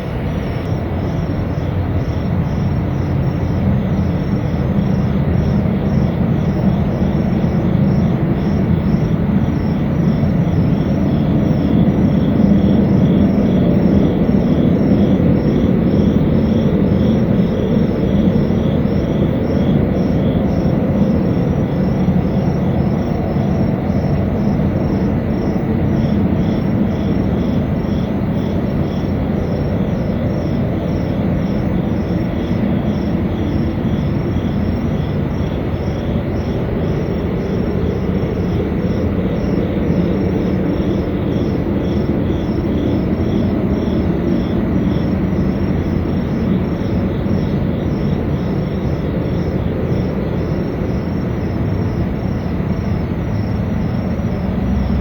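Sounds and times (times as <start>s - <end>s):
insects chirping: 0.0s - 55.0s
loud low rumbling drone: 49.6s - 55.0s.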